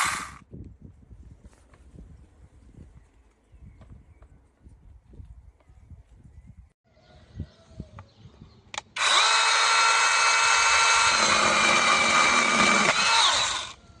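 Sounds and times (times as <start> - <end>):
mini chainsaw whining: 0.0 - 0.4, 9.0 - 13.8.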